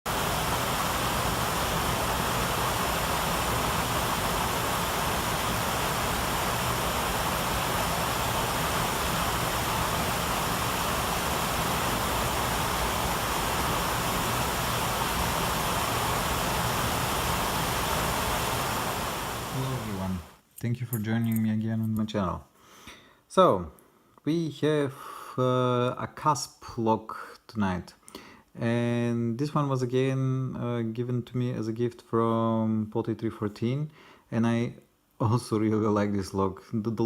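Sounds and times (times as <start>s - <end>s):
steady static rushing noise: 0.1s - 20.4s.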